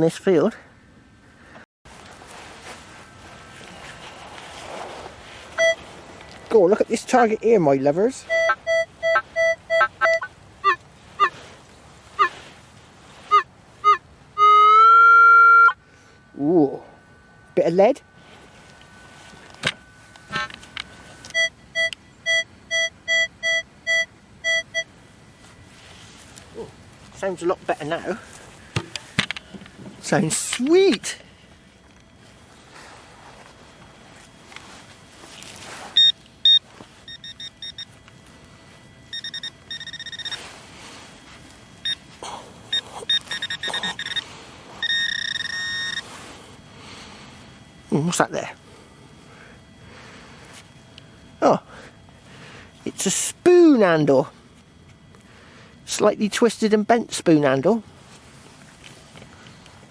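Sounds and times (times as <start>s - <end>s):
metal detector beeping: 5.3s - 12.5s, 13.2s - 29.5s, 30.1s - 48.4s
rising chirp: 8.2s - 11.3s, 42.7s - 46.1s.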